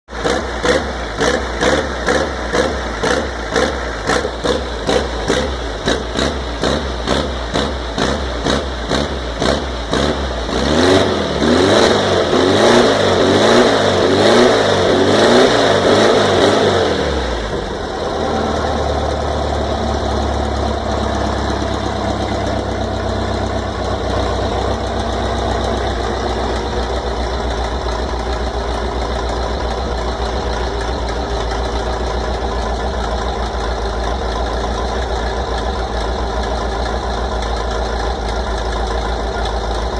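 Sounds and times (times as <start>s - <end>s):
engine idling: 0.1s - 39.9s
engine revving: 0.1s - 39.9s
engine cranking: 17.5s - 39.9s.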